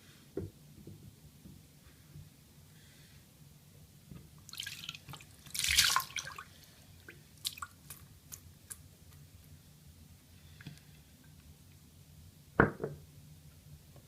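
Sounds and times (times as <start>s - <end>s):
water splashing: 4.5s - 6.8s
water dripping: 4.5s - 8.8s.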